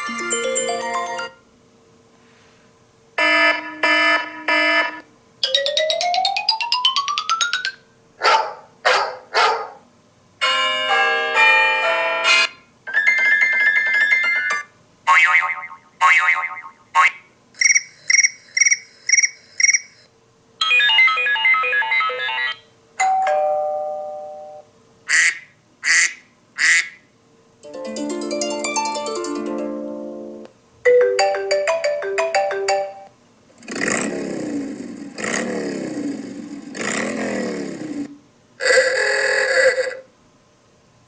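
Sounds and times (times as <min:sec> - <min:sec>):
phone alert tones: 0:00.0 - 0:01.4.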